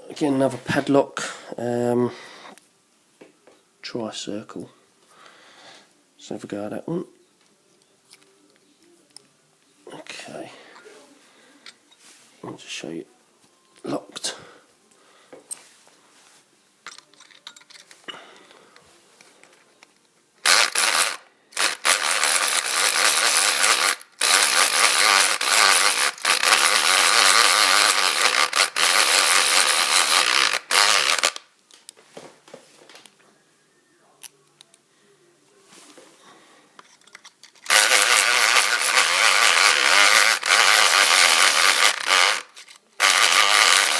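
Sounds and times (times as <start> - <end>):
electric pick gun buzzing: 20.4 - 31.4, 37.7 - 43.9.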